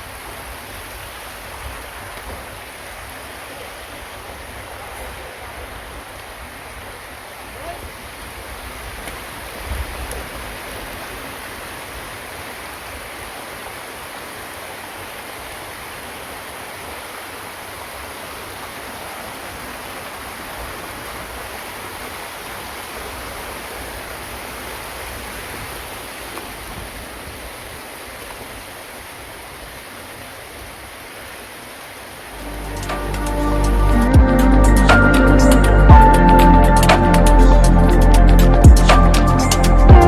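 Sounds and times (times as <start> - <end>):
waterfall rushing: 27.8 - 40.0.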